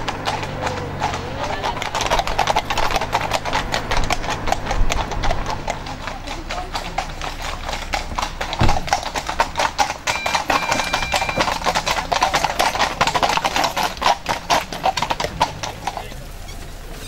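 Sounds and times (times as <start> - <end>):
hooves clip-clopping on road: 0.0 - 17.0
thin high tone: 10.0 - 11.8.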